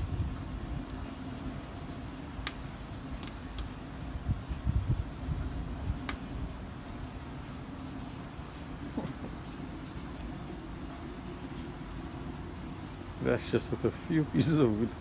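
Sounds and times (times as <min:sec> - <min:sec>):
wood fire rumbling: 0:00.0 - 0:15.0
fire crackling pops: 0:02.3 - 0:04.6, 0:05.8 - 0:07.4.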